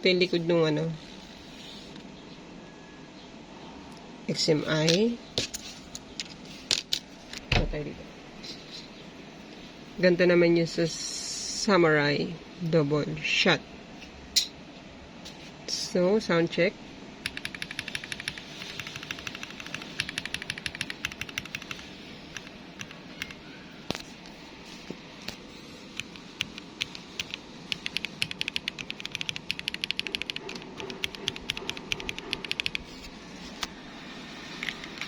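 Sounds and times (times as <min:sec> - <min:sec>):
mechanical keyboard typing: 0:17.2 - 0:23.4, 0:25.9 - 0:32.9.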